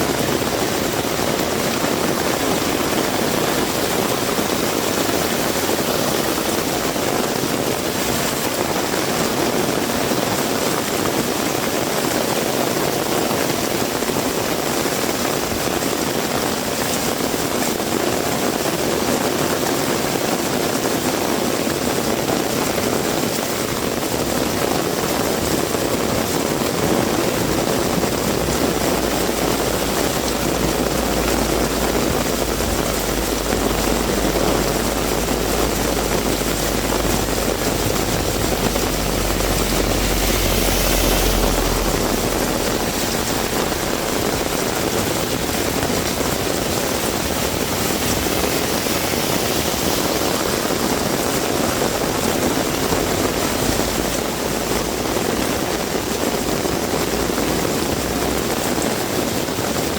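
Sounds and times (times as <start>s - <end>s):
heavy rain falling: 0.0s - 59.9s
low rumble: 25.5s - 58.2s
brief hiss: 29.0s - 45.4s.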